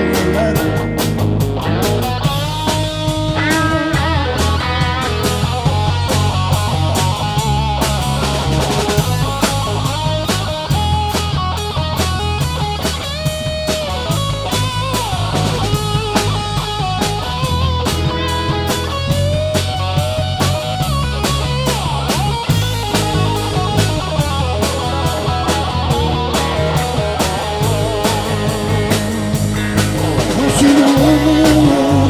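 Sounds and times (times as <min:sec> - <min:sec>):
bass guitar: 0:00.0 - 0:32.0
drum kit beat: 0:00.0 - 0:32.0
electric guitar lead: 0:00.0 - 0:32.0.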